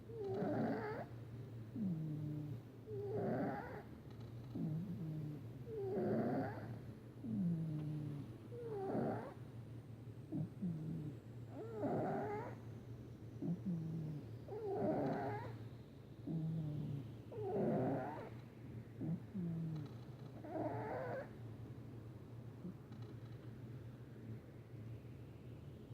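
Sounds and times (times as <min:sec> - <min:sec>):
cat snoring: 0:00.1 - 0:01.1, 0:01.7 - 0:03.9, 0:04.5 - 0:09.4, 0:10.3 - 0:12.6, 0:13.4 - 0:15.6, 0:16.2 - 0:18.4, 0:19.0 - 0:21.3.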